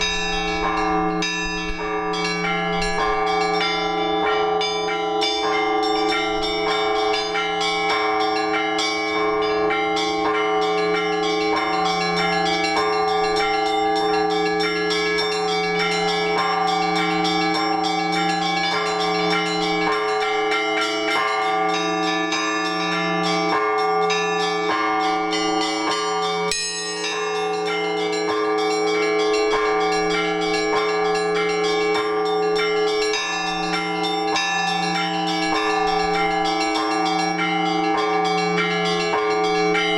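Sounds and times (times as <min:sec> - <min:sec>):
low bell struck: 0:00.0 - 0:04.3
smaller higher bells ringing: 0:00.0 - 0:39.9.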